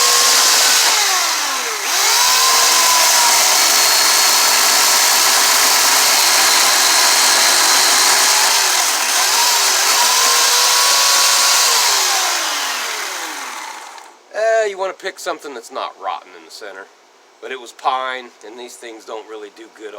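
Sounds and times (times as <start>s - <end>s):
chainsaw cutting log: 0.0s - 14.2s.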